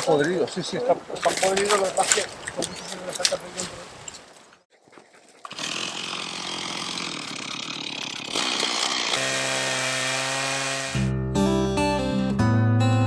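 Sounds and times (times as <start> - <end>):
chainsaw cutting wood: 5.5 - 11.1
guitar music: 11.0 - 13.0.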